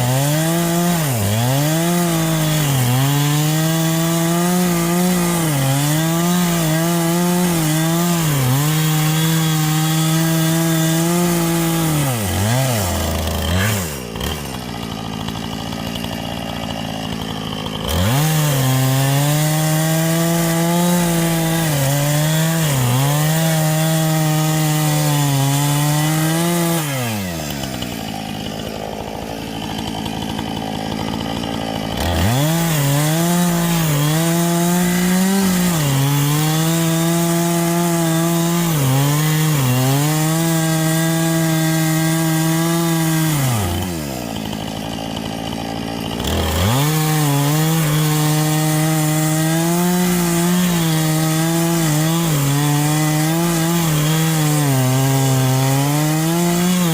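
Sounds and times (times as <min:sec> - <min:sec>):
chainsaw cutting wood: 0:00.0 - 0:56.9.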